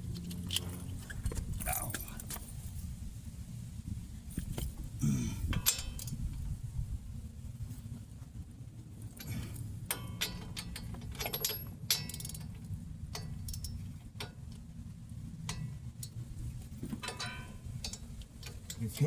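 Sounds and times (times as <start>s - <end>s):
low steady rumble: 0.0s - 19.0s
tools clicking against metal: 9.2s - 14.7s, 17.0s - 19.0s.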